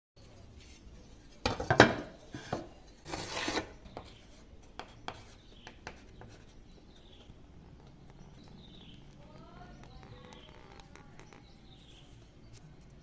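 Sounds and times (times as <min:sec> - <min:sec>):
hard object scraping a surface: 0:00.6 - 0:04.4.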